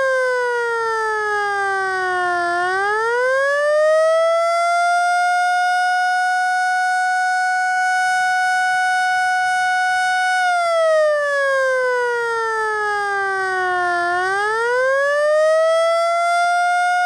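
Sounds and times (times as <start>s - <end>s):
electromechanical siren wailing: 0.0s - 17.0s.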